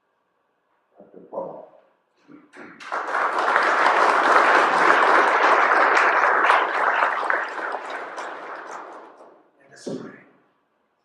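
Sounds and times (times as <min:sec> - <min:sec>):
audience applauding: 0:02.5 - 0:09.4.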